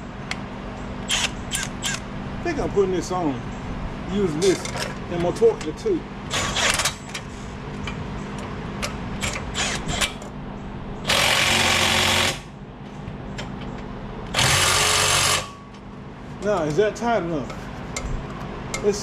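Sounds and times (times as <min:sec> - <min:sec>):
cordless power tool driving bolts: 0:01.0 - 0:02.0, 0:06.3 - 0:07.1, 0:09.2 - 0:10.2, 0:11.1 - 0:12.5, 0:14.3 - 0:15.6.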